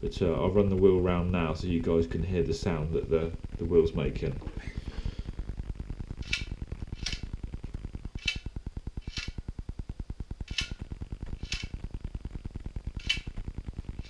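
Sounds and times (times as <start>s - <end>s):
fast low ticking of spinning wheel: 0.0s - 14.0s
sharp metallic click: 6.2s - 7.3s, 8.2s - 9.4s, 10.5s - 10.8s, 11.4s - 11.8s, 13.0s - 13.4s.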